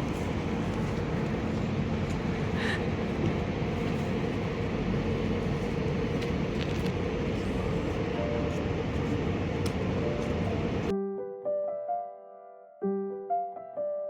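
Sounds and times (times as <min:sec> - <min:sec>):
train running rumble: 0:00.0 - 0:10.9.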